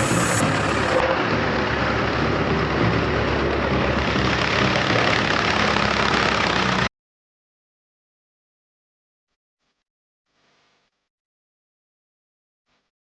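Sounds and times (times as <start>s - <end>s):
engine idling: 0.0s - 6.9s.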